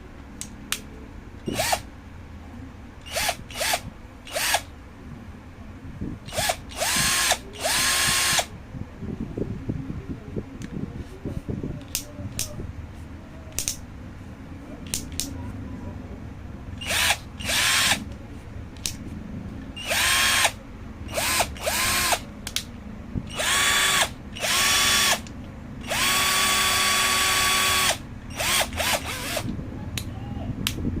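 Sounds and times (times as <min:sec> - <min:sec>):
cordless drill motor whine: 0:01.5 - 0:01.8, 0:03.0 - 0:04.7, 0:06.3 - 0:08.5, 0:16.8 - 0:18.0, 0:19.8 - 0:22.2, 0:23.3 - 0:25.2, 0:25.8 - 0:29.5.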